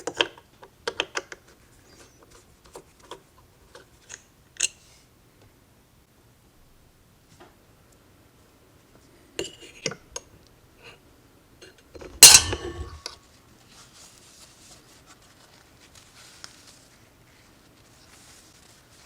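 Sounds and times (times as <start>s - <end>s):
light metal clinks: 12.2s - 13.1s
metallic clatter with ringing: 12.2s - 13.1s
faint rustling: 12.2s - 19.0s.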